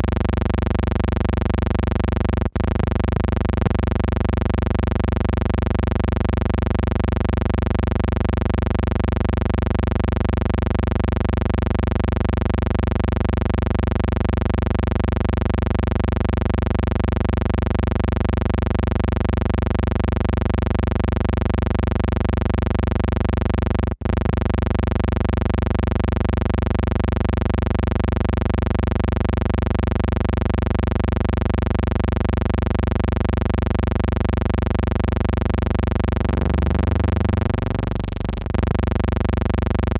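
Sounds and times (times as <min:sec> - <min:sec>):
electrical hum: 0:01.4 - 0:06.8, 0:23.9 - 0:24.6, 0:35.5 - 0:39.9.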